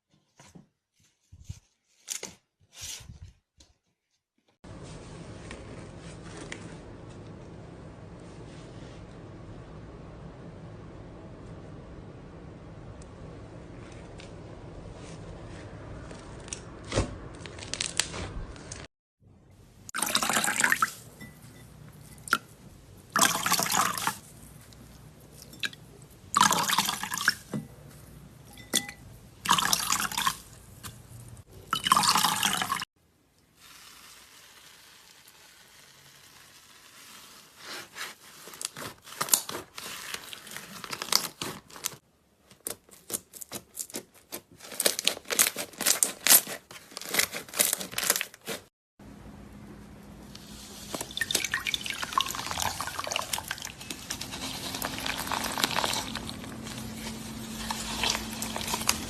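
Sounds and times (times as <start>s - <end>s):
slime squelching: 50.4s - 59.0s.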